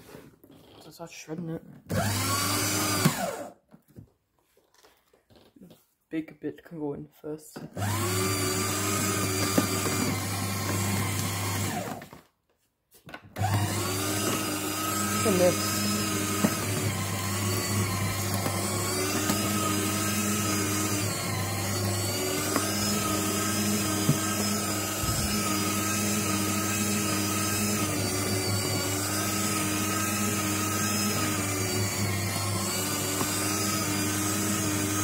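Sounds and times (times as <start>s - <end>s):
shredder motor humming: 1.9s - 3.5s, 7.8s - 12.2s, 13.4s - 35.0s.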